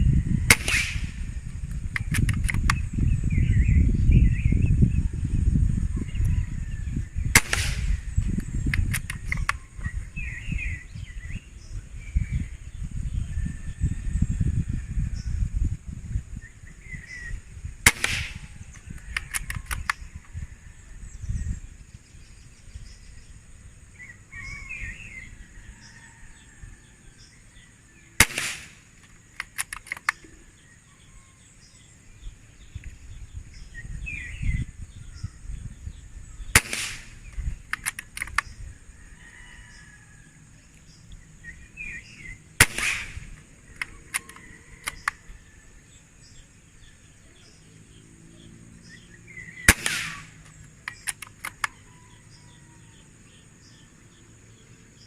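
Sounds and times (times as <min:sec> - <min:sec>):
air rifle shots: 0:00.4 - 0:02.9, 0:07.3 - 0:09.6, 0:17.8 - 0:20.1, 0:28.2 - 0:30.3, 0:36.5 - 0:38.6, 0:42.2 - 0:45.2, 0:49.5 - 0:51.8
quick clicks: 0:00.5 - 0:02.9, 0:07.4 - 0:09.6, 0:17.8 - 0:20.1, 0:28.2 - 0:30.4, 0:36.5 - 0:38.6, 0:42.6 - 0:45.2, 0:49.7 - 0:51.8
high insect drone: 0:38.4 - 0:55.0
bird chirps: 0:40.6 - 0:42.6, 0:43.4 - 0:55.0.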